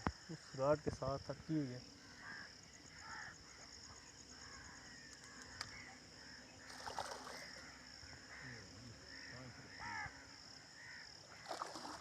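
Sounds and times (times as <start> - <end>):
crickets droning: 0.0 - 12.0
crows cawing: 2.0 - 3.4, 4.4 - 12.0.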